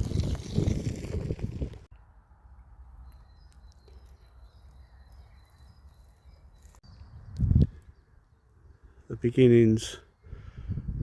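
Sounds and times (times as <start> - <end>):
wind buffeting microphone: 0.0 - 1.9, 7.0 - 7.8, 10.3 - 11.0
high bird chirps: 3.0 - 8.4.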